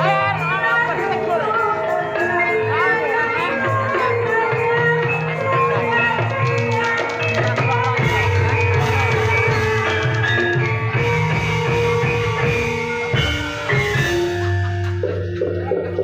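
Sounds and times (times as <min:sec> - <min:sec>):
live band playing: 0:00.0 - 0:16.0
drum kit beat: 0:04.6 - 0:16.0.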